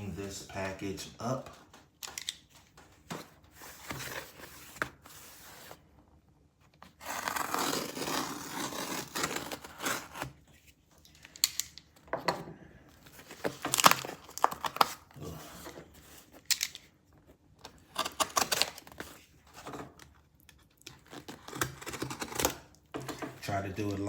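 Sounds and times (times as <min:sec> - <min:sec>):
package cutting and scraping: 0:06.8 - 0:10.5, 0:17.7 - 0:20.1, 0:20.9 - 0:23.2
package tearing: 0:06.9 - 0:10.4, 0:13.2 - 0:15.2, 0:17.7 - 0:19.3, 0:20.8 - 0:22.7.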